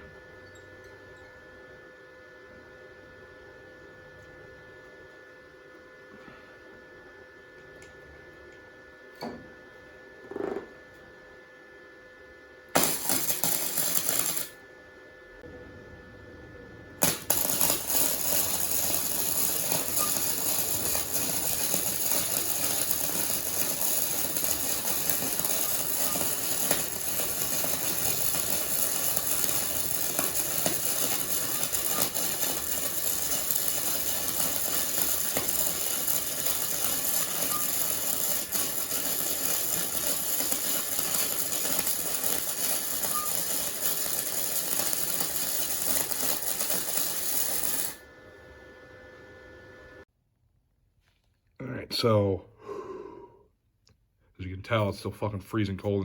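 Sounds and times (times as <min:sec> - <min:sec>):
welding arc crackling: 0:12.8 - 0:14.6, 0:17.0 - 0:48.0.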